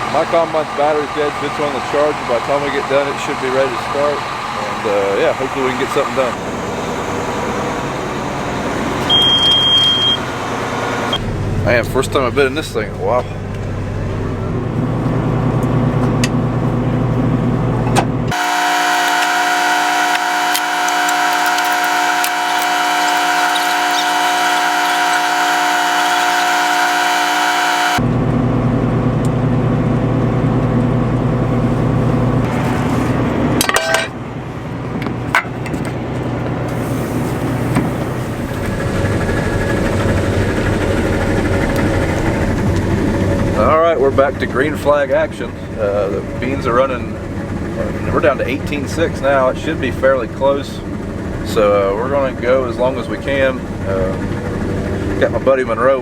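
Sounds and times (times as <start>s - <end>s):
higher-pitched multi-tone hum: 0.0s - 11.6s, 18.3s - 30.6s
combine engine low rumble: 0.0s - 56.0s.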